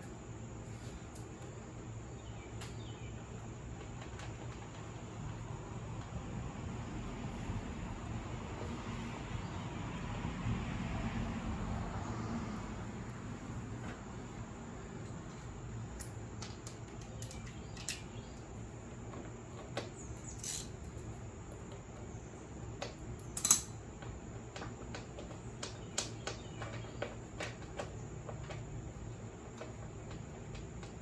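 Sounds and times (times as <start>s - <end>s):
clicks and clinks of metal tools: 16.0s - 18.2s, 20.2s - 20.9s, 23.2s - 23.8s.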